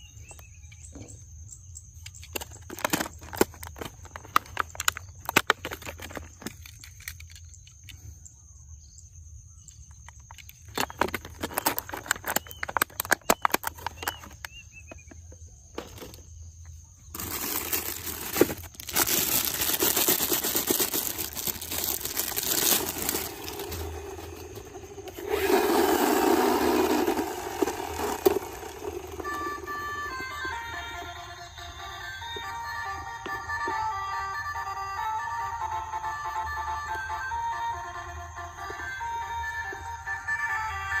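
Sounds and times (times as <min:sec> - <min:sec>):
plastic toy cars clicking: 0:02.0 - 0:08.0, 0:09.8 - 0:15.2, 0:17.2 - 0:31.1
whir: 0:22.0 - 0:31.4.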